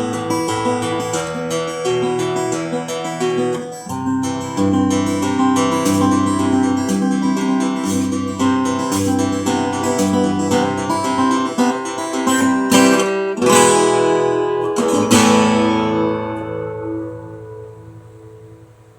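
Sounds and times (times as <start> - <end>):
acoustic guitar chords: 0.0 - 18.9.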